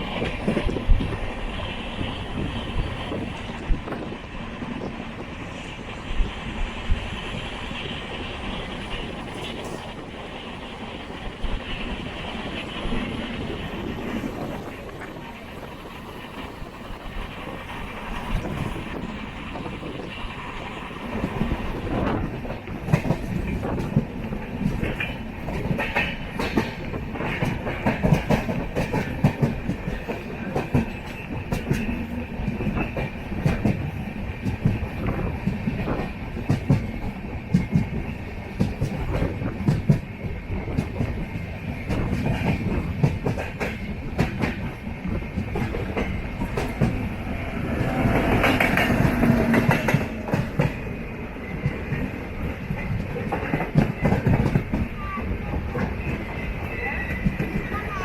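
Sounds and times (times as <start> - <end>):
train rumbling on track: 0.0 - 58.0
wheels clacking over rail joints: 40.7 - 58.0.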